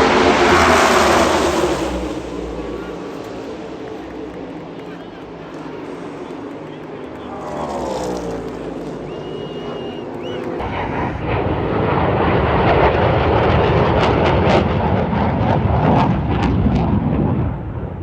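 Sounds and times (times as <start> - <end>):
loud steady engine: 0.0 - 18.0.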